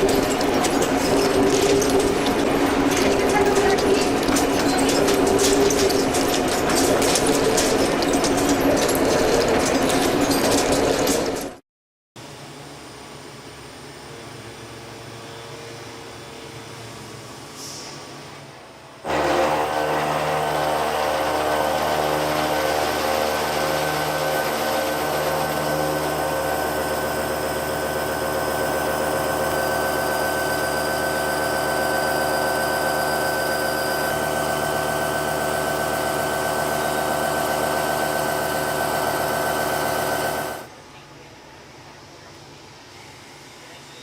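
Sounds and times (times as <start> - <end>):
lathe mechanical whine: 19.1 - 40.7.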